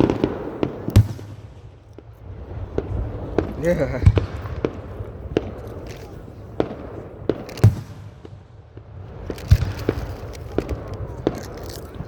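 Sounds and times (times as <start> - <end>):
fireworks bursting: 0.0 - 12.0.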